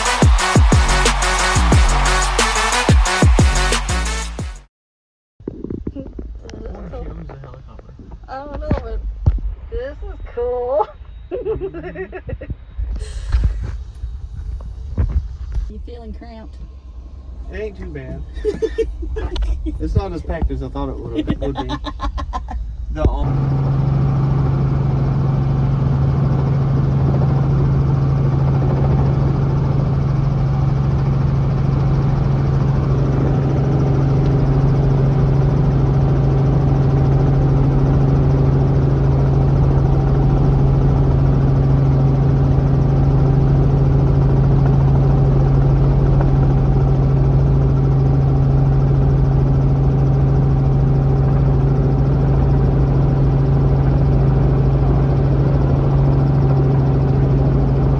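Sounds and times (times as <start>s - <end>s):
helicopter engine and rotors humming: 15.7s - 57.9s.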